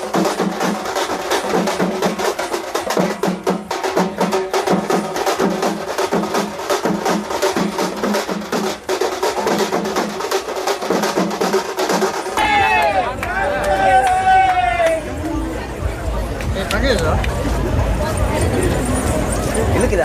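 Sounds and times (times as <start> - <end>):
drum ensemble playing fast rhythm: 0.0 - 12.8.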